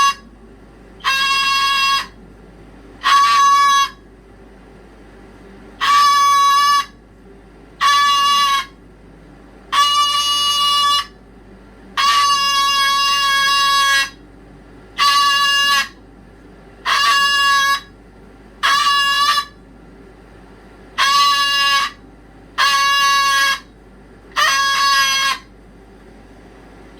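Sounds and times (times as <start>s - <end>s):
pet crying loudly: 24.4s - 25.5s.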